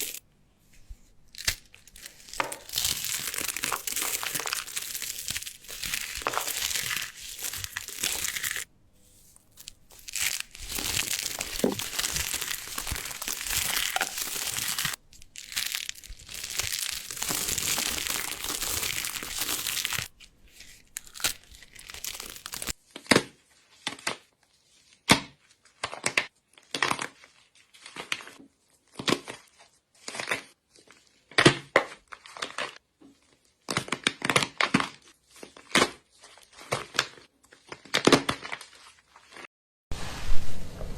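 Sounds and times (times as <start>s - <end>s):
crisp crunches of soap: 0.0s - 0.2s, 1.3s - 39.4s
dry soap crumbling crackle: 0.0s - 0.2s, 1.3s - 22.8s.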